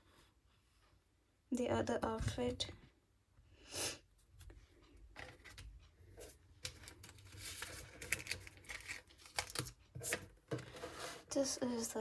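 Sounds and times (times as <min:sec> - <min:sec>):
paper and plastic packaging rustling: 0:06.8 - 0:11.4.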